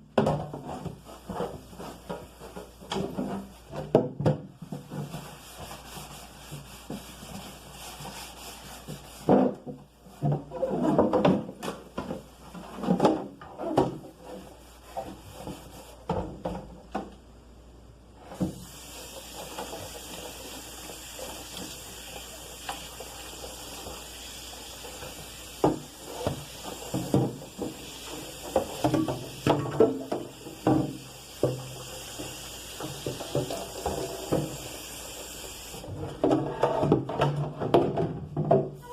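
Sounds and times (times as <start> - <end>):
items knocking while washed: 0.0 - 17.2, 18.3 - 34.9, 35.8 - 38.9
objects knocking and rubbing: 0.1 - 17.1, 24.8 - 34.7, 35.9 - 38.9.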